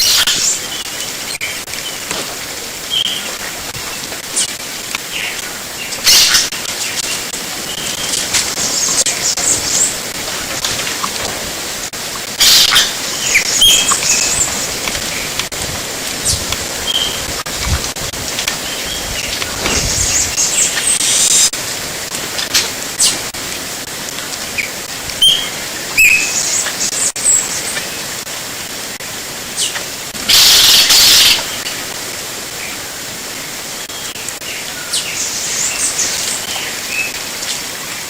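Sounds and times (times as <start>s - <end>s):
loud burst of high hiss: 0.0s - 37.8s
steady background hiss: 0.0s - 38.0s
small birds chirping: 2.8s - 10.1s, 12.4s - 15.4s, 18.5s - 21.5s, 24.6s - 28.0s, 29.6s - 31.8s.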